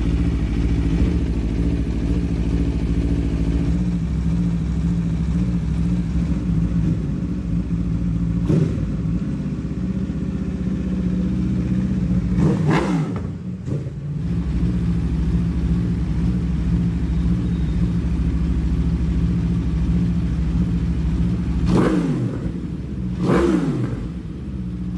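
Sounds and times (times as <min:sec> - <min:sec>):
motorcycle engine idling: 0:00.0 - 0:24.9
engine throttle blips: 0:12.0 - 0:24.9.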